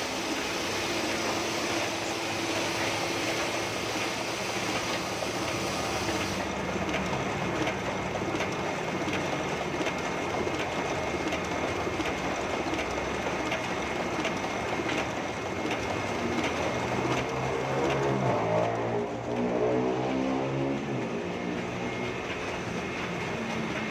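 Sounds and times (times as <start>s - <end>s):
printing press clattering: 0.0s - 19.5s, 20.8s - 23.9s.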